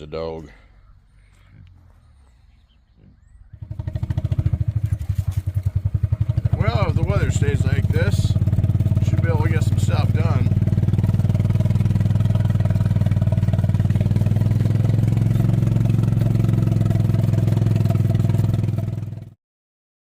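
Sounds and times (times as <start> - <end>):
small engine running: 3.5 - 19.4.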